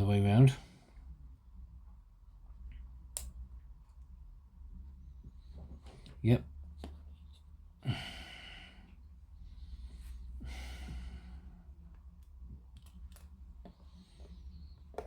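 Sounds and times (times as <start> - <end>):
steady low hum: 0.0 - 15.0
person sighing heavily: 7.8 - 8.8.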